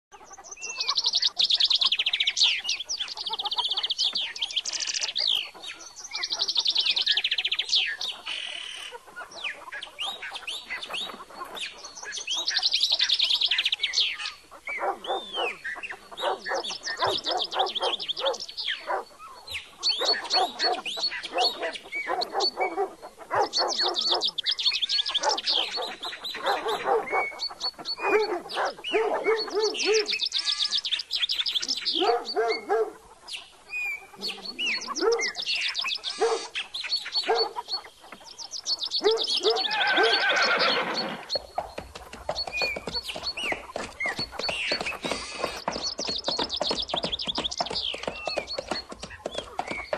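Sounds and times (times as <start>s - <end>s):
lower repeated bird calls: 0.1s - 49.9s
high bird trills: 39.0s - 41.4s, 42.4s - 49.9s.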